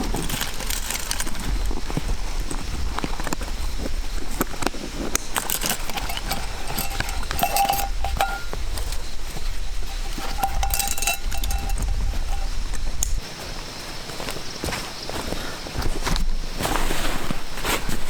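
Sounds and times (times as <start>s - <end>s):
metal gear clinking: 0.0s - 1.5s, 5.2s - 13.2s
short metallic rings: 5.4s - 13.2s.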